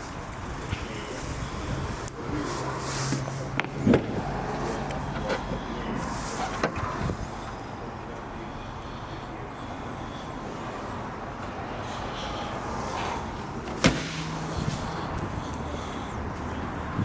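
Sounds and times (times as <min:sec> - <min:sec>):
steady background noise: 0:00.0 - 0:17.0
car door shutting: 0:03.1 - 0:05.6, 0:13.6 - 0:15.0.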